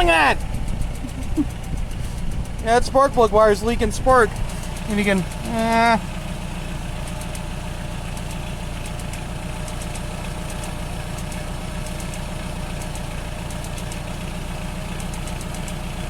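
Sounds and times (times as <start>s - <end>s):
car engine idling: 0.0s - 16.0s
spark plug wire arcing ticks: 7.0s - 14.2s, 14.8s - 15.9s.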